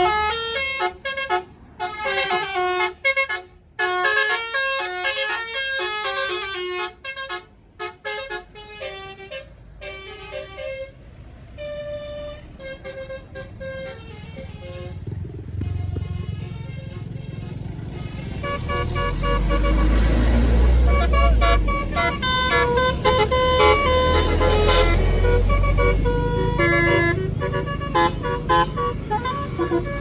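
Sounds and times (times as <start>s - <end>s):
bus horn playing a melody: 0.0s - 15.1s, 15.7s - 30.0s.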